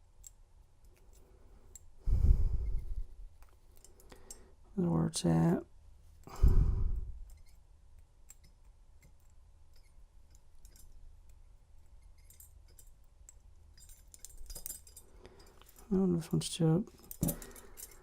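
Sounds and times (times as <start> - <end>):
handcuffs clicking: 8.2 - 11.4, 12.0 - 15.8, 16.9 - 18.0.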